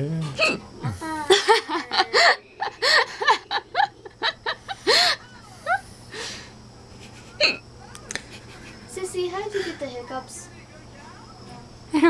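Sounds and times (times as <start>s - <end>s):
girl giggling: 0.4s - 5.8s, 7.0s - 9.7s.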